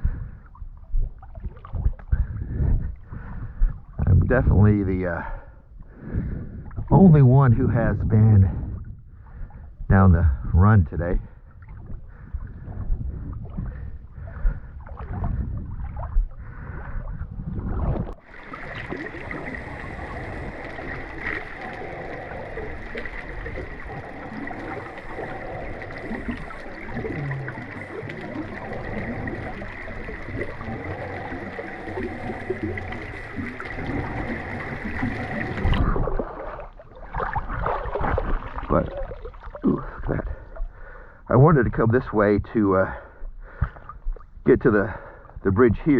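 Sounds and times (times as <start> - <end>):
water sloshing and gurgling: 0.0 - 45.9
watery hiss: 18.2 - 35.8.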